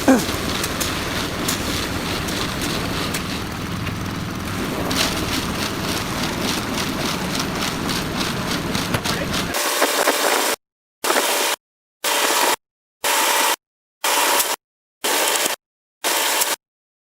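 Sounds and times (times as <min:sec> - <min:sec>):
concrete mixer engine running: 0:00.0 - 0:09.6
knocks and rattles: 0:00.0 - 0:09.6.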